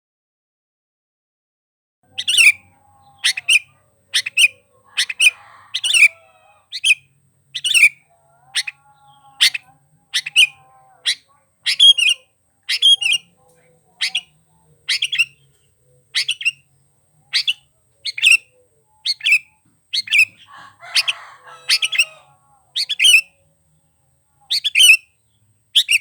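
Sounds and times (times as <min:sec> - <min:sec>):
bulbul calling sharp notes: 0:02.1 - 0:08.0, 0:08.6 - 0:13.3, 0:13.9 - 0:23.4, 0:25.8 - 0:26.0.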